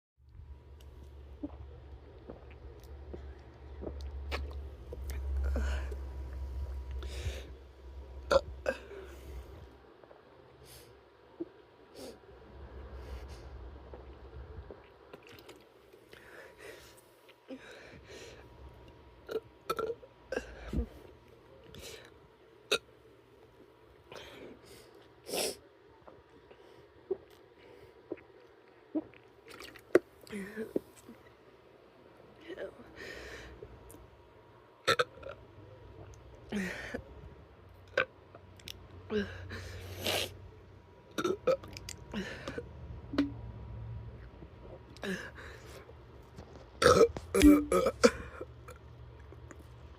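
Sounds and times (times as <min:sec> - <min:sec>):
person gulping a drink: 0:01.0 - 0:07.1, 0:13.9 - 0:15.7, 0:19.3 - 0:20.9, 0:27.0 - 0:31.1, 0:41.1 - 0:43.4, 0:46.3 - 0:49.7
airy breaths: 0:05.2 - 0:07.8
person chugging a drink: 0:42.4 - 0:43.4, 0:46.8 - 0:48.4
deep burp: 0:46.8 - 0:48.4.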